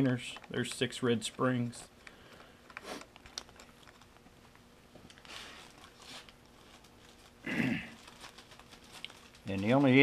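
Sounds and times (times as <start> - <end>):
light clicks of small parts: 0.0 - 6.4
packaging rustling: 0.0 - 10.0.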